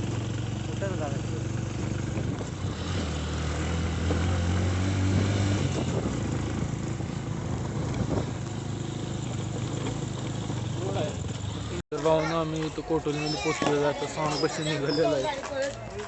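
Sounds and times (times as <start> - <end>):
vehicle engine revving: 0.0 - 11.8.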